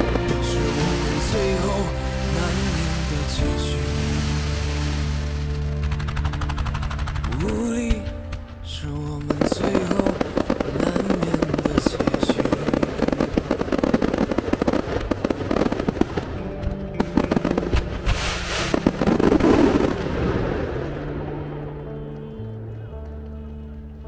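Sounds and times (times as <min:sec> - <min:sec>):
background music: 0:00.0 - 0:24.0
rapid crackling pops: 0:04.2 - 0:20.9.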